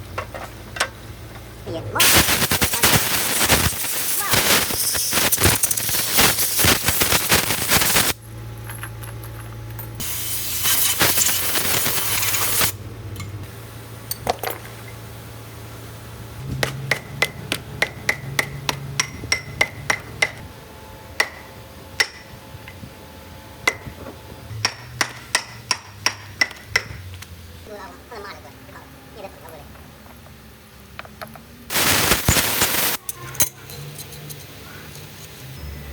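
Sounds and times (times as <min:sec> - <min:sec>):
loud hissing noise: 0:01.9 - 0:08.2, 0:10.0 - 0:12.8, 0:31.7 - 0:35.6
hammer striking metal: 0:16.6 - 0:20.5, 0:21.2 - 0:22.4, 0:24.6 - 0:27.0.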